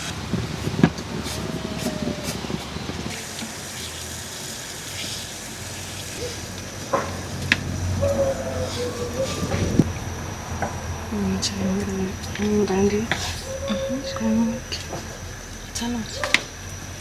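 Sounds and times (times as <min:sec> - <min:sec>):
water splashing during hand washing: 0:00.0 - 0:17.0.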